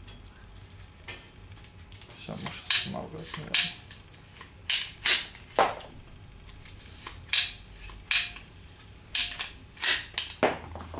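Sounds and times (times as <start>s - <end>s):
pruning shears clicking and snipping: 1.6s - 4.0s.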